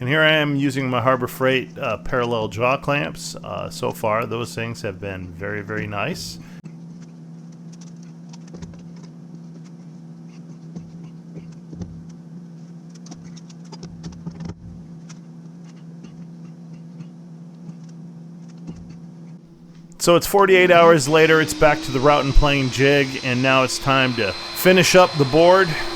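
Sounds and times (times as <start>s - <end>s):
steady low hum: 0.7s - 6.6s, 19.4s - 25.9s.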